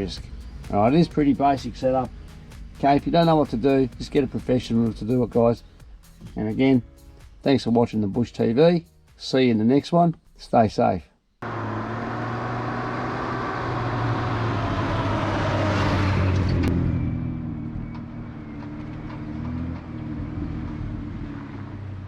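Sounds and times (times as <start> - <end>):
vehicle engine driving past: 11.4 - 22.0.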